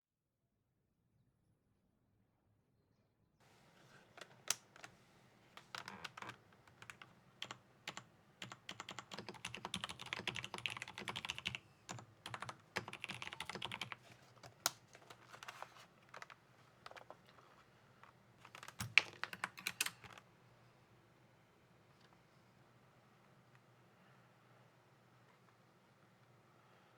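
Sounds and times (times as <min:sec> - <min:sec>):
typing on mechanical keyboard: 0:05.6 - 0:17.1, 0:18.4 - 0:20.2.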